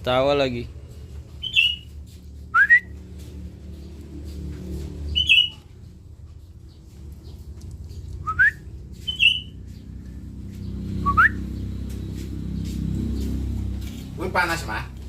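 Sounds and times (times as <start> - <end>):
parrot whistled calls: 1.4 - 1.9, 5.2 - 5.6, 8.2 - 9.6.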